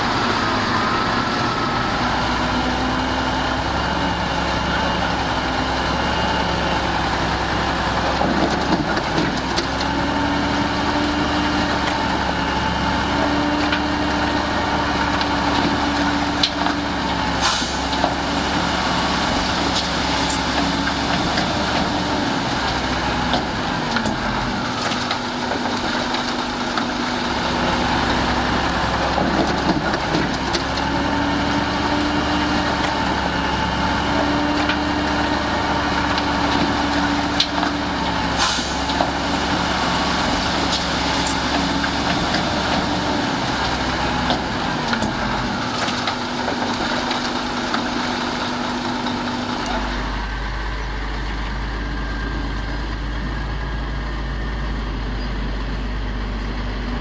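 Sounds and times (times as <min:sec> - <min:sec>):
heavy diesel engines running: 0:00.0 - 0:57.0.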